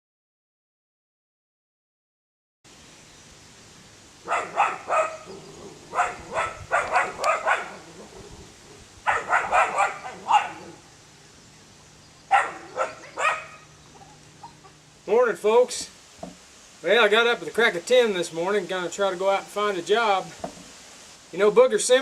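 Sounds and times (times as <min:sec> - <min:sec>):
dog barking: 0:04.2 - 0:08.3, 0:09.0 - 0:10.8, 0:12.3 - 0:13.7.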